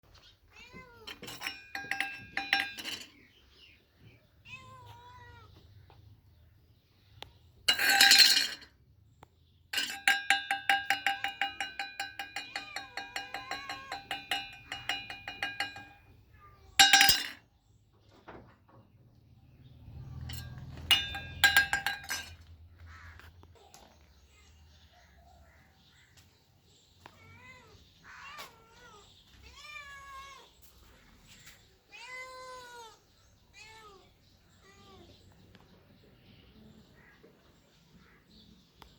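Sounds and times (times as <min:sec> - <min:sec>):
ringing clinks: 0:01.1 - 0:03.3, 0:07.7 - 0:08.7, 0:09.7 - 0:16.2, 0:16.8 - 0:17.4, 0:20.0 - 0:22.6
kittens meowing: 0:04.4 - 0:05.7, 0:27.1 - 0:30.5.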